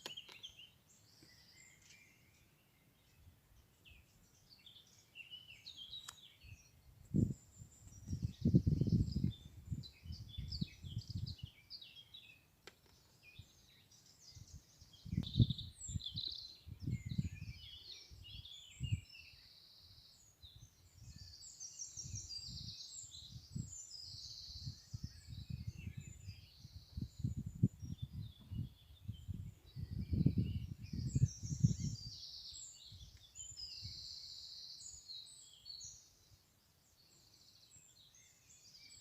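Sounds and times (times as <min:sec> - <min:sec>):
songbirds chirping and trilling: 0:00.0 - 0:39.0
wind buffeting microphone: 0:06.5 - 0:11.6, 0:14.2 - 0:19.1, 0:22.0 - 0:34.2.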